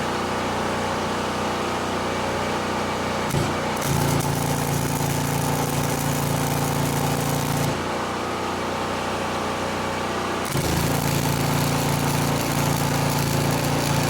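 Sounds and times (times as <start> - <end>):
small engine running: 3.7 - 8.0, 9.5 - 14.0.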